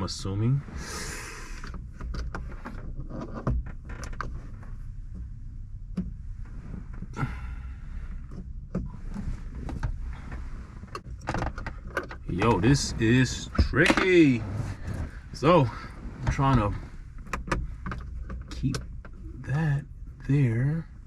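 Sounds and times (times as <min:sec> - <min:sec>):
low rumble: 0:12.2 - 0:21.0.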